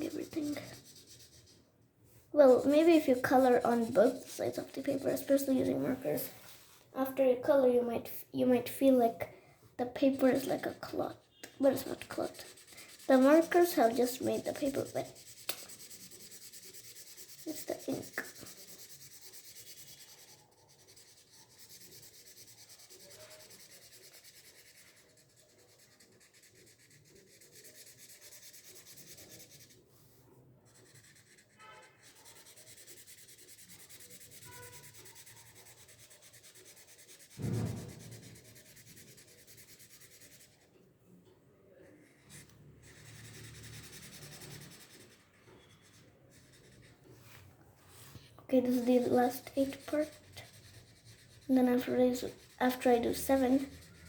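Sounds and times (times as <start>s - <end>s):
marker scratching on paper: 0.0s - 1.6s, 2.4s - 7.7s, 9.8s - 40.7s, 41.8s - 54.0s
brief thump: 37.4s - 38.3s.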